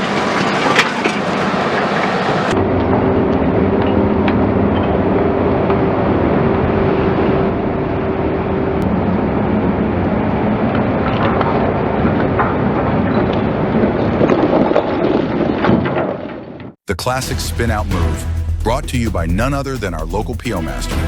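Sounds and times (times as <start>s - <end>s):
diesel engine running: 17.0s - 21.0s.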